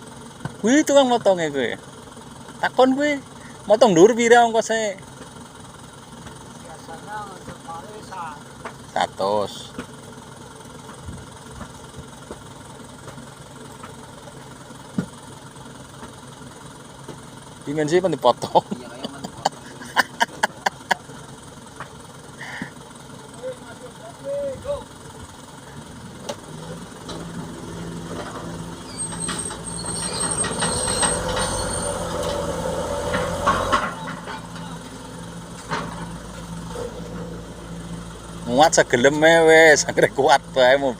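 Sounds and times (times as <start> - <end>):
diesel engine idling: 0.0 - 40.9
high thin squeal: 28.7 - 32.2.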